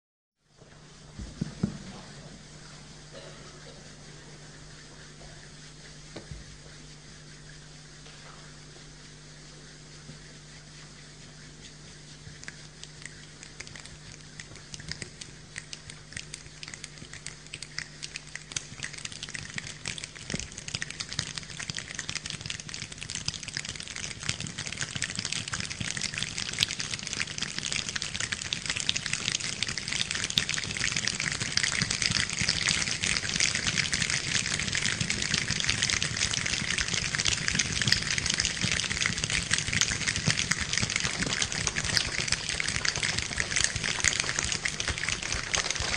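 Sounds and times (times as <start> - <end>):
rain falling: 32.0 - 45.9.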